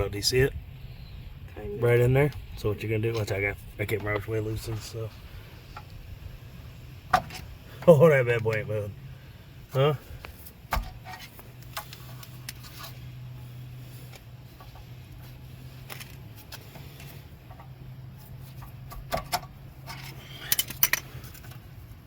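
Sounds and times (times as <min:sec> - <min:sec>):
steady low hum: 0:00.0 - 0:22.0
screwdriver clinking and scraping metal: 0:18.5 - 0:21.6.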